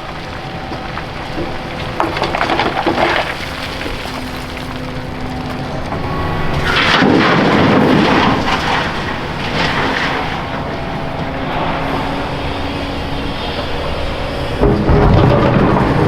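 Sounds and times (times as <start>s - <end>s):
bucket rattling and scraping concrete: 0.0s - 11.8s
excavator engine and hydraulics: 0.0s - 16.0s.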